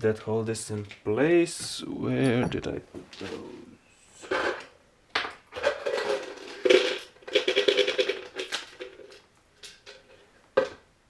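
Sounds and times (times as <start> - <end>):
small screws rattling in a container: 5.6 - 9.2.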